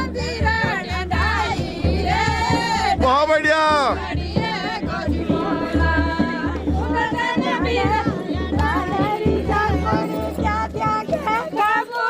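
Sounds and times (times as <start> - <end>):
low pulsing beat: 0.0 - 11.6
folk song singing: 0.0 - 12.0.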